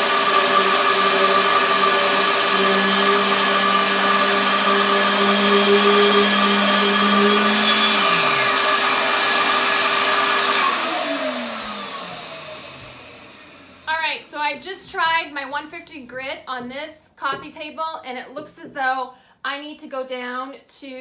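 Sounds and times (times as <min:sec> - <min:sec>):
orbital sander on wood: 0:00.0 - 0:13.9
shop vacuum running: 0:00.0 - 0:14.2.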